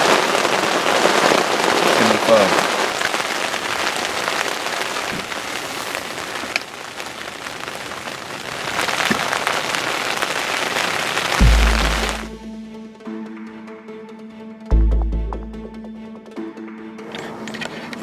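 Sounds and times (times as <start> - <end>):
heavy rain pouring: 0.0 - 12.6
sharp raindrop hits: 0.0 - 12.6.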